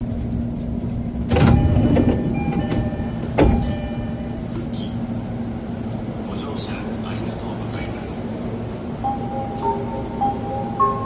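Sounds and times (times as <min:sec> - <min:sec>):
distorted train door chime: 0:01.2 - 0:04.9, 0:09.0 - 0:11.0.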